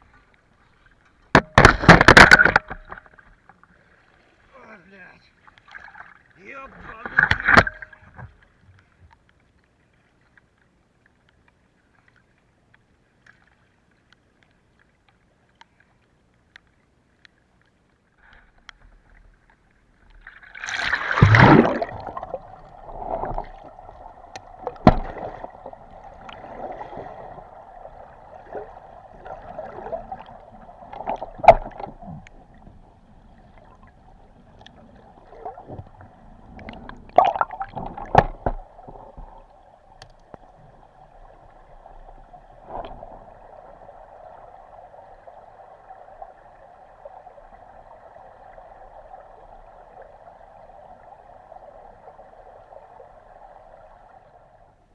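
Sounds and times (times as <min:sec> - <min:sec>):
water splash: 0:01.3 - 0:03.2, 0:20.2 - 0:32.6, 0:34.9 - 0:39.4
rushing and gurgling water: 0:20.0 - 0:54.9.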